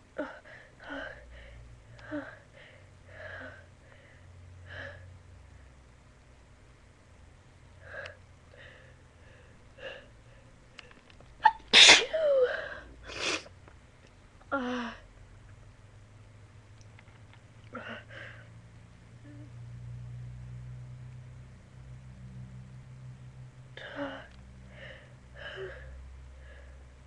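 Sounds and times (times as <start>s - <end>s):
person sneezing loudly: 11.4s - 12.3s.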